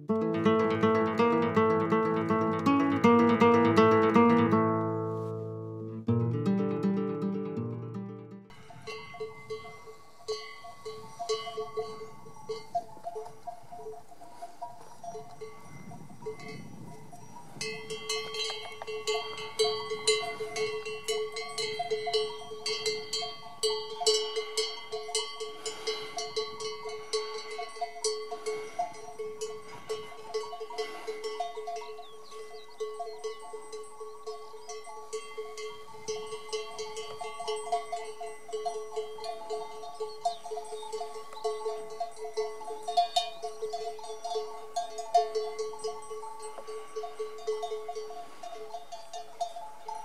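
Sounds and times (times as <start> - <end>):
livestock bells clanking: 0.1 - 5.3, 8.5 - 50.0.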